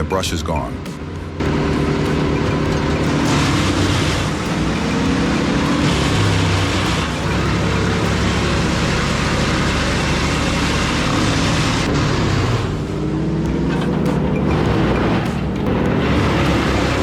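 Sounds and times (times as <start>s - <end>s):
wood chipper running: 0.9s - 17.0s.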